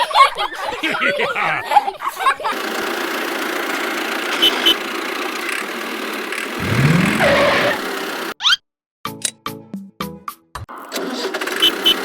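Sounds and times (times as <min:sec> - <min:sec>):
small engine running: 0:02.5 - 0:08.3, 0:10.8 - 0:12.0.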